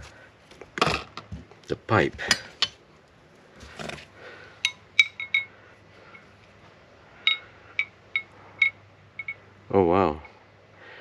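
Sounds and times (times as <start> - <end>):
metal parts clinking: 4.6 - 5.5, 7.2 - 9.4.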